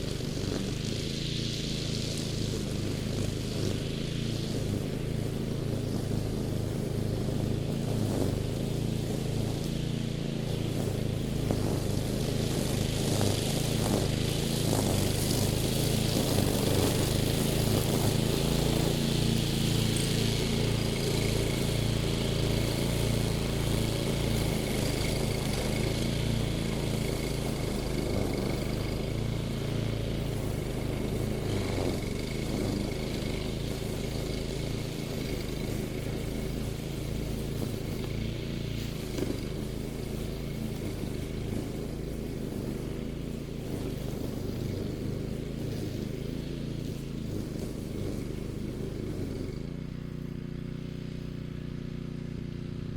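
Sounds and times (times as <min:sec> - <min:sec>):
mower engine running: 0:00.0 - 0:52.9.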